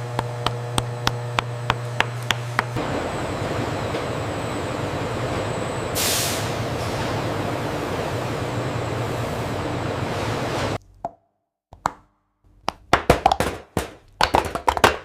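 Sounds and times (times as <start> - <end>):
factory machinery running: 0.0 - 10.8
hiss of released air: 5.9 - 10.5.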